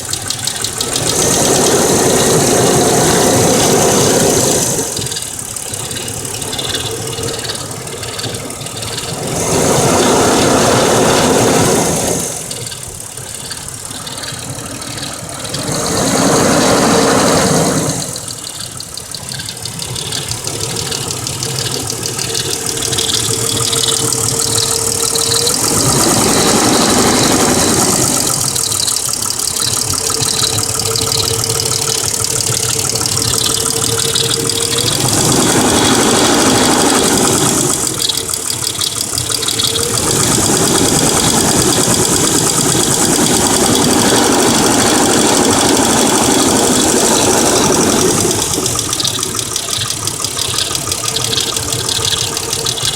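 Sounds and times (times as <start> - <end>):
car engine running: 0.0 - 52.9
rapid lifter ticking: 0.0 - 52.9.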